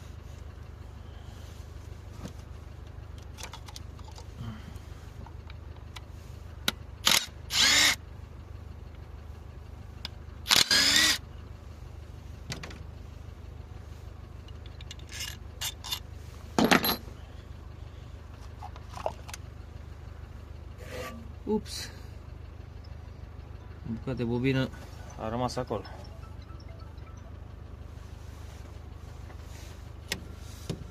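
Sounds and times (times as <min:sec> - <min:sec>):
tools and parts clicking: 0:03.2 - 0:04.3, 0:14.5 - 0:16.0
power drill spinning: 0:07.1 - 0:08.0, 0:10.6 - 0:11.2.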